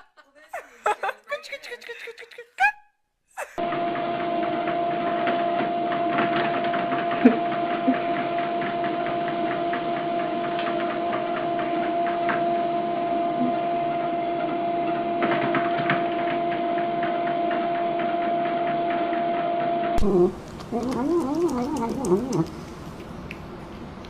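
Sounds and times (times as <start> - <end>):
small machine humming and ticking: 3.6 - 23.1.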